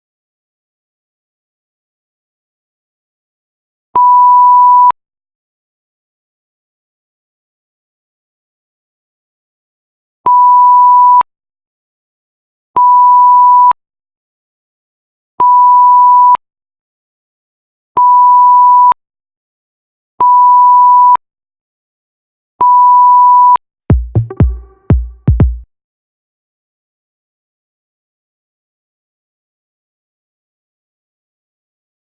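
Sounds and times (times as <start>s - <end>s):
censor bleep: 4.0s - 5.0s, 10.3s - 11.3s, 12.8s - 13.8s, 15.4s - 16.4s, 18.0s - 19.0s, 20.2s - 21.2s, 22.6s - 23.6s
electronic music with heavy drums: 23.9s - 25.6s.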